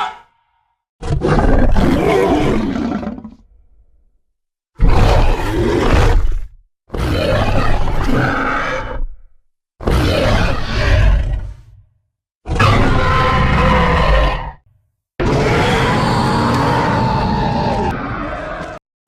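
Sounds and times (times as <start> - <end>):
deep creature roars: 1.0 - 3.5, 4.8 - 9.1, 9.8 - 11.8, 12.5 - 14.6, 15.2 - 18.8.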